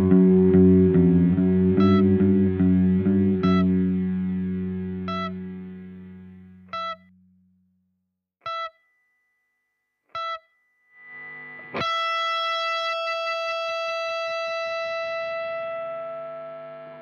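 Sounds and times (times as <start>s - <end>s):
distorted electric guitar: 0.0s - 7.0s, 11.0s - 17.0s.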